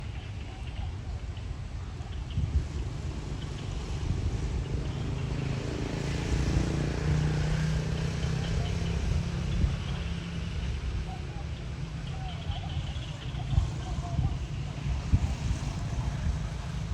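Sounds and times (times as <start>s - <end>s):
vehicle engine passing: 3.0s - 10.8s.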